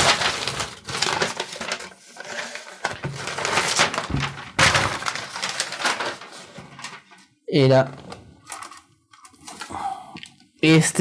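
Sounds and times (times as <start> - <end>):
packaging crinkling: 0.0 - 7.3, 8.0 - 9.7.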